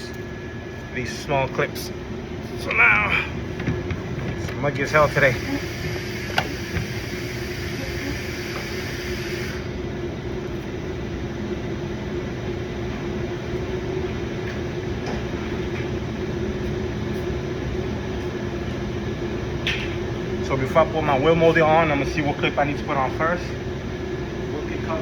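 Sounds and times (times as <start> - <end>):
machinery humming: 0.0 - 25.0.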